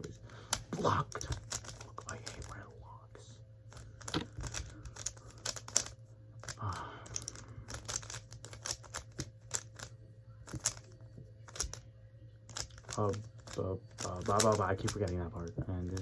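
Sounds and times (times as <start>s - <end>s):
plastic cube clicking: 0.5s - 2.6s, 3.7s - 9.9s, 10.5s - 11.8s, 12.5s - 15.2s.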